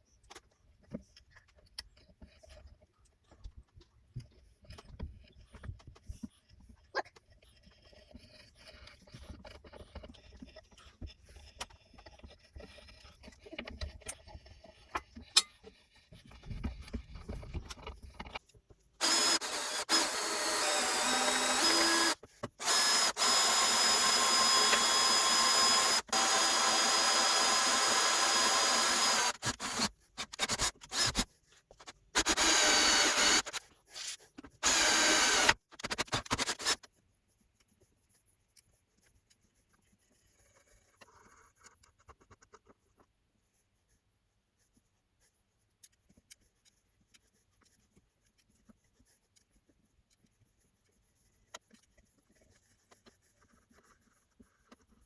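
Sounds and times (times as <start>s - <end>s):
power tool running: 19.0s - 31.2s, 32.2s - 33.6s, 34.6s - 35.6s.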